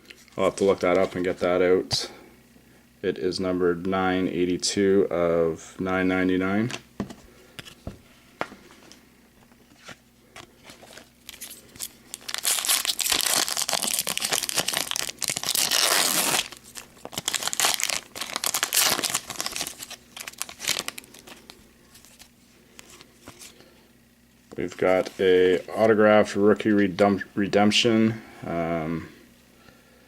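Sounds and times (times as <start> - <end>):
wrapper crinkling and tearing: 10.5 - 23.5.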